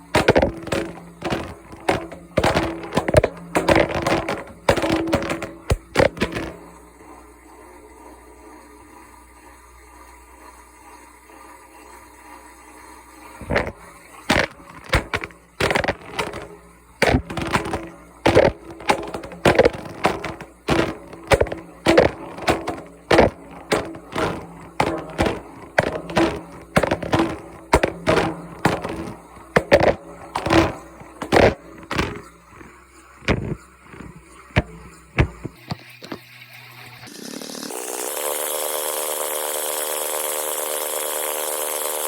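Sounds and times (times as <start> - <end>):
phone banging in washing machine drum: 0.0 - 6.9, 13.4 - 36.3.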